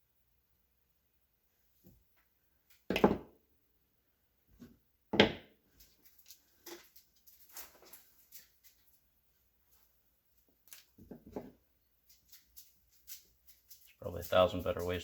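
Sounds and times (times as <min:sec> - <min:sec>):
rustling: 0:05.7 - 0:15.0.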